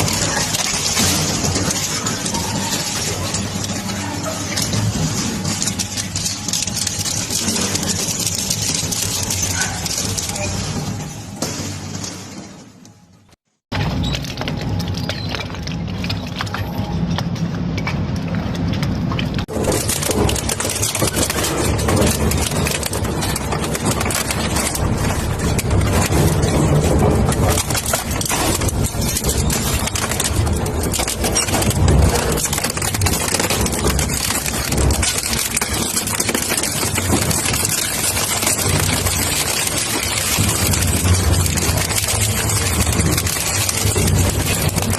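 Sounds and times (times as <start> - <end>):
material being smashed clatter: 0.0 - 12.8, 19.2 - 44.9.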